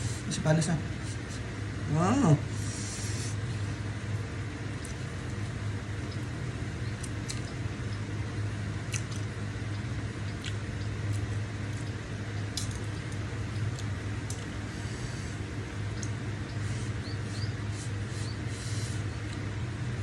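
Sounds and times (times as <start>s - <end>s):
steady low hum: 0.0s - 20.0s
person chewing noodles: 4.6s - 6.4s, 7.0s - 7.6s, 8.7s - 17.0s.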